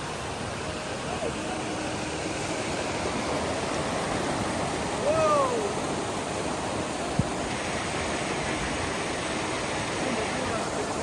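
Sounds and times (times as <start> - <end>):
waterfall and river rushing: 0.0 - 11.0.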